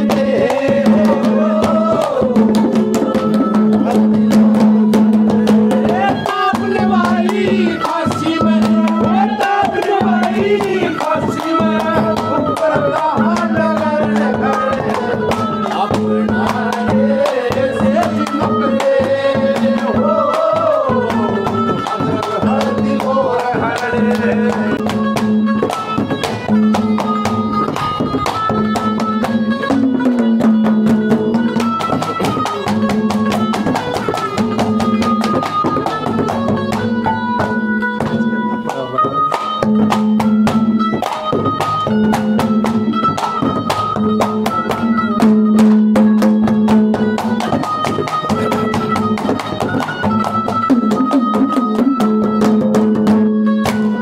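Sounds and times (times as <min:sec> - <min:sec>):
folk melody instrument: 0:00.0 - 0:54.0.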